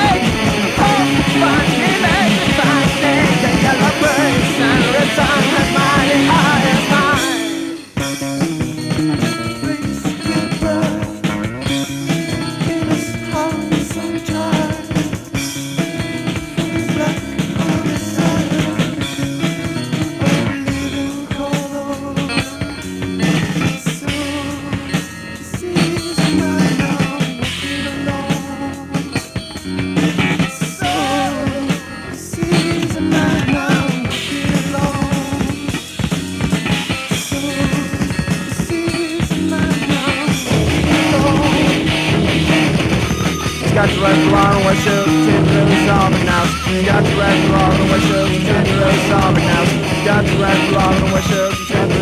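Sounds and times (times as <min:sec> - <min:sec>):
psychedelic rock music: 0:00.0 - 0:52.0.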